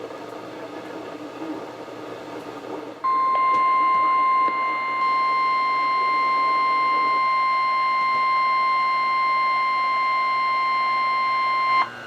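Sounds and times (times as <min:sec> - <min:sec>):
steady alarm beep: 0:03.0 - 0:12.0.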